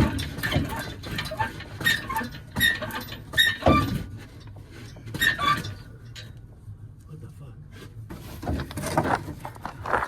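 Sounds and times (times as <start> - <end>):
metallic squeaks and knocks: 0.0 - 6.4.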